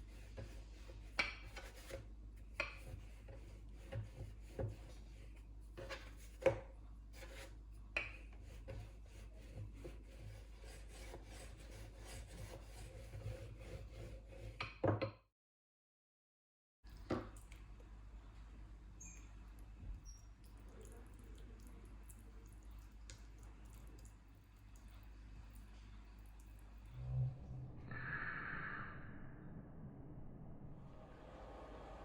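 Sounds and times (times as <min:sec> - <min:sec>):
dough rubbing and scraping on board: 0:00.0 - 0:07.6, 0:08.2 - 0:14.6.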